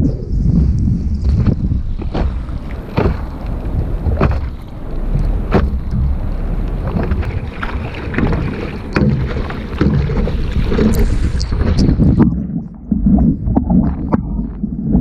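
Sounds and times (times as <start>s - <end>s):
water splashing around paddleboard: 0.0s - 15.0s
wind rumbling on microphone: 0.0s - 15.0s.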